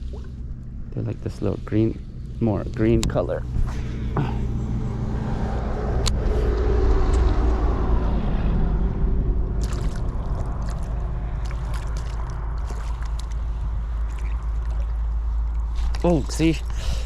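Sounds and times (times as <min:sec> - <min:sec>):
wind rumbling on microphone: 0:00.0 - 0:17.0
lake water sloshing: 0:09.6 - 0:17.0.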